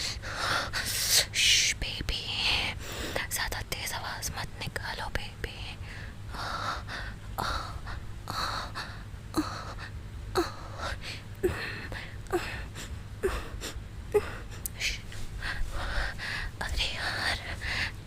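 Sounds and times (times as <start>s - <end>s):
woman breathing heavily: 0.0s - 1.2s, 2.8s - 3.2s, 5.7s - 18.0s
woman gasping: 5.9s - 16.6s.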